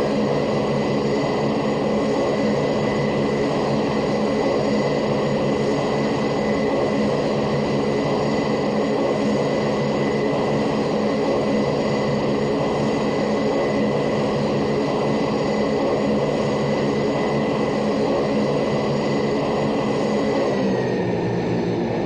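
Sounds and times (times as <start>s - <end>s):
machine droning hum with whine: 0.0s - 22.0s.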